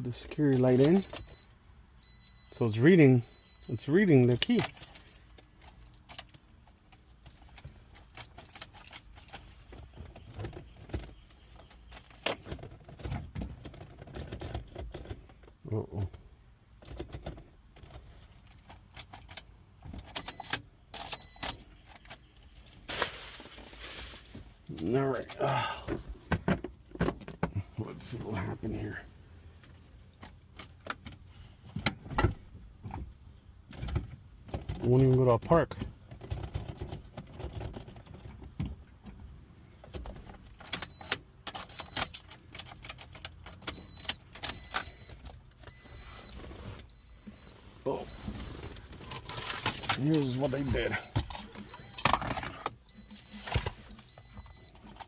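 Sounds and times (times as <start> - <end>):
car keys jangling: 0.4 - 1.4, 3.2 - 14.7, 17.8 - 22.9, 40.2 - 46.3, 46.9 - 55.0
short electronic beeps: 0.9 - 4.0, 43.7 - 55.0.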